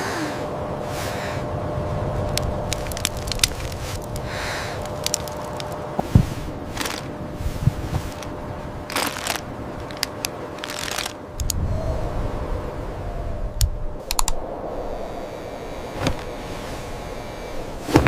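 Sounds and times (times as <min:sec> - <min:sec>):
low wind rumble: 0:00.0 - 0:18.0
sharp clicks and crackles: 0:02.3 - 0:06.2, 0:07.7 - 0:08.3, 0:08.9 - 0:11.6, 0:13.6 - 0:14.4
rushing gusts of hiss: 0:02.4 - 0:06.6.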